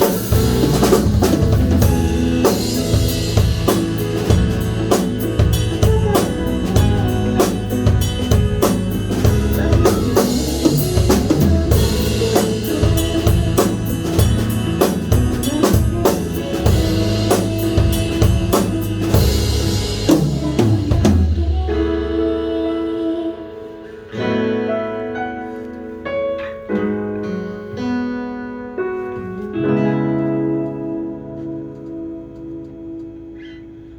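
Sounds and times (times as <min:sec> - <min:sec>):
drum kit: 0:00.0 - 0:22.2
pop band playing instrumental: 0:00.0 - 0:23.3
held chord: 0:00.0 - 0:23.5.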